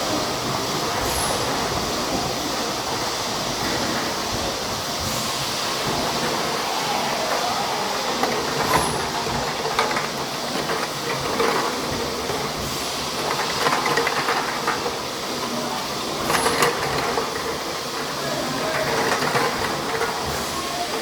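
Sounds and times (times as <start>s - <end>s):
bottling machine running: 0.0s - 21.0s
machine clattering: 0.0s - 21.0s.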